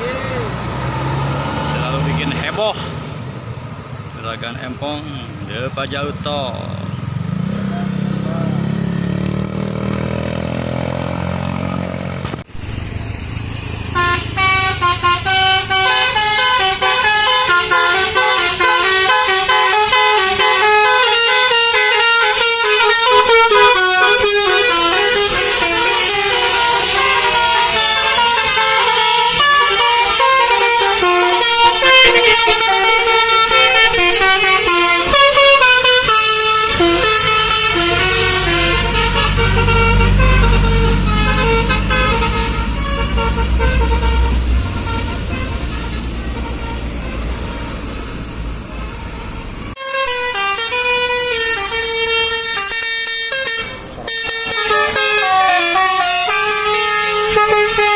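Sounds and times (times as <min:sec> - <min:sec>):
heavy engine rumble: 0:11.9 - 0:49.8
musical air horn melody: 0:13.9 - 0:57.9.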